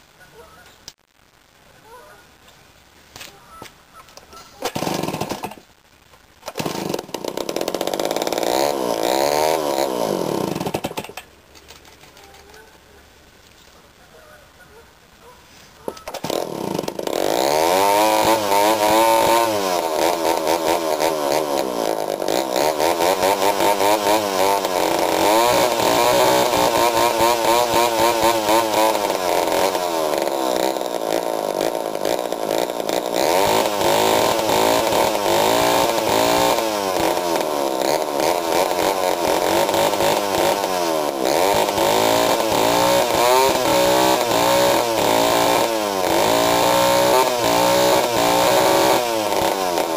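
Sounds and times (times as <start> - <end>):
chainsaw engine revving: 4.6 - 5.6, 6.4 - 11.2, 16.0 - 49.9.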